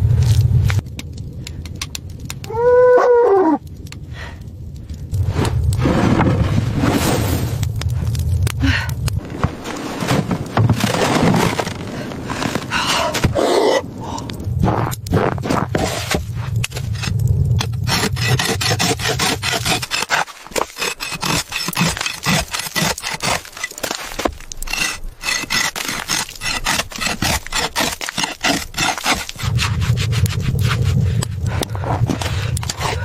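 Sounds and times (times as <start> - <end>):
steady low rumble: 0.0 - 2.5, 3.5 - 19.9, 29.2 - 33.0
rapid rasping scrapes: 15.3 - 33.0.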